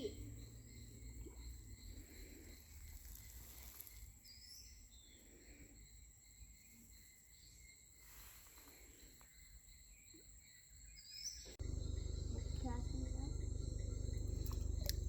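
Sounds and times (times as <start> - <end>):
faint chirps: 0.0 - 15.0
low rumble: 11.6 - 15.0.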